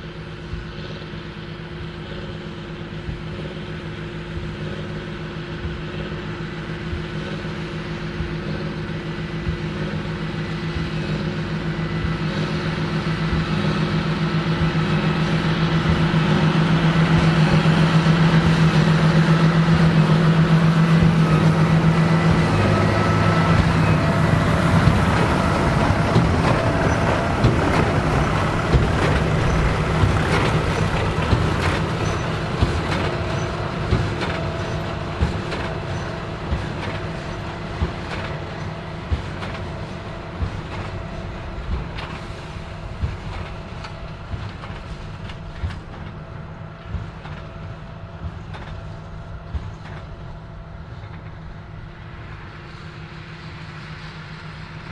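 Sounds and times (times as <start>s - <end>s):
tractor diesel engine under load: 0.0s - 54.9s
sharp machinery knocks: 15.8s - 42.4s.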